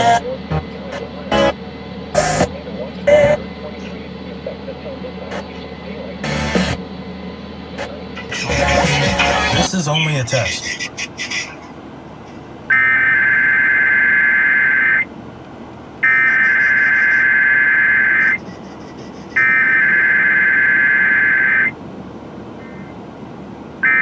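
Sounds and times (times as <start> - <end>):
raspy electronic data screeches: 16.0 - 21.7.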